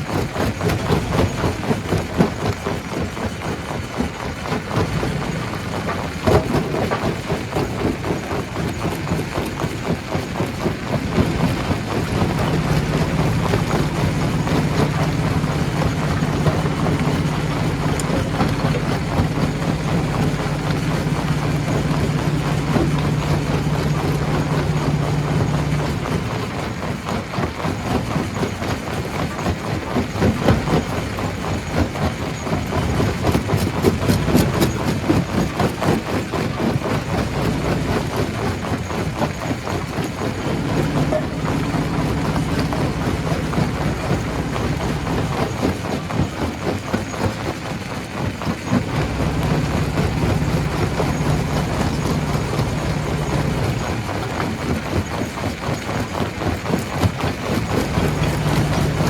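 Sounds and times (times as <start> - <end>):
stone crusher rattling and knocking: 10.5 - 26.9, 30.0 - 47.4, 48.6 - 59.0
low steady hum: 11.1 - 26.6, 40.4 - 46.2, 48.7 - 54.4, 57.6 - 59.0.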